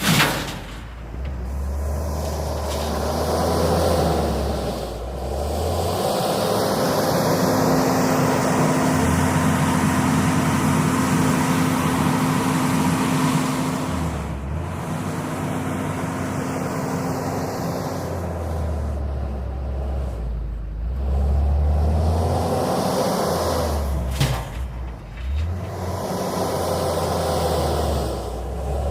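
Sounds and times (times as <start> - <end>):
wheel loader diesel engine revving: 0.0 - 28.9.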